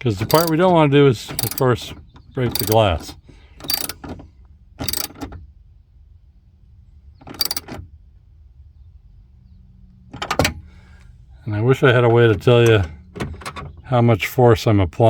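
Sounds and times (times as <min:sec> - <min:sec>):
ratchet wrench clicking: 0:00.2 - 0:00.6, 0:01.3 - 0:01.7, 0:02.5 - 0:02.9, 0:03.6 - 0:04.0, 0:04.8 - 0:05.2, 0:07.4 - 0:07.7.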